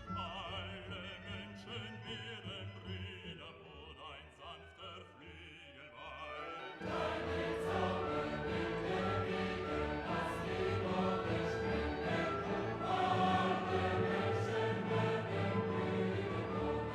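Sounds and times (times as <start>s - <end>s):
choral music: 0.0s - 16.9s
held accompaniment: 6.8s - 16.9s.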